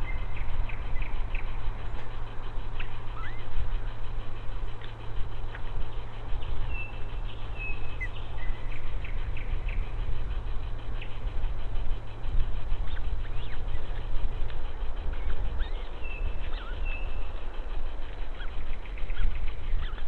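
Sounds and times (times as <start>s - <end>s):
bird chirps and whistles: 0.0s - 1.5s, 2.4s - 3.8s, 6.6s - 10.0s, 12.9s - 13.9s, 15.2s - 17.4s, 18.4s - 20.0s
low rumble: 0.0s - 20.0s
steady hiss: 0.0s - 20.0s.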